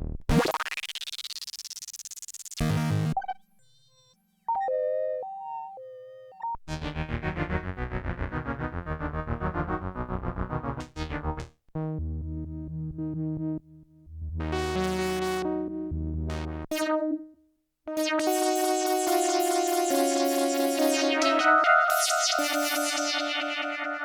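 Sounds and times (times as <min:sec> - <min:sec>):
synthesizer playing: 0:17.9 - 0:24.0.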